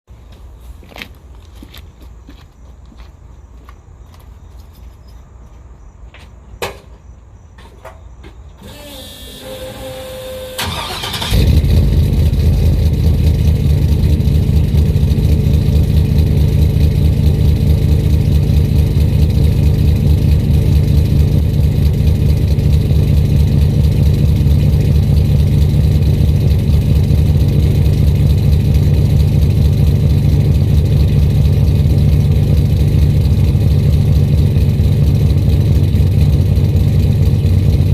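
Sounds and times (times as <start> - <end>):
car engine cold idle: 8.6 - 37.9.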